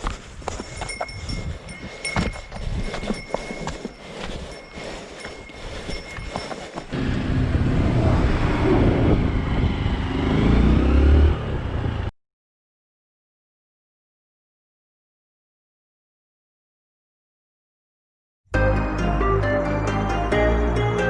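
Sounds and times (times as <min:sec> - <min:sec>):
vehicle engine revving: 0:06.9 - 0:12.1.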